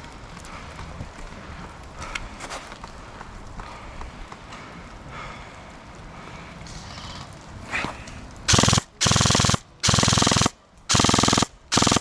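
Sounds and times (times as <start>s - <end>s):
airsoft gun bursts: 8.5s - 12.0s.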